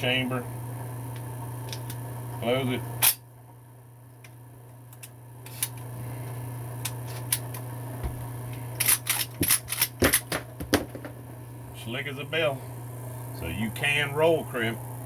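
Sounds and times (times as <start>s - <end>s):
low hum: 11.1s - 15.0s.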